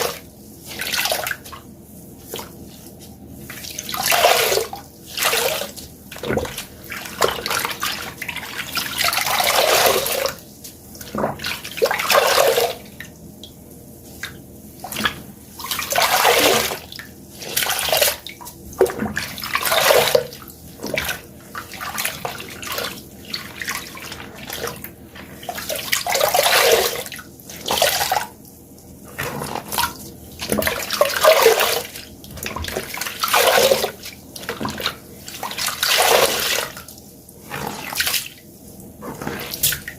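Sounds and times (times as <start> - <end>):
wet sponges squeezed: 0.0 - 13.1, 14.0 - 39.9
water gushing and splashing: 3.5 - 10.4, 14.8 - 28.4, 29.0 - 39.9.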